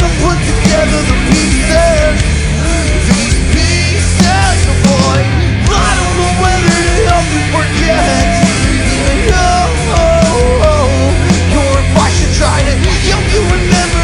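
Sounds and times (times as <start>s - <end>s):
heavy rock band playing: 0.0s - 14.0s
melodic lead guitar bending: 0.0s - 14.0s.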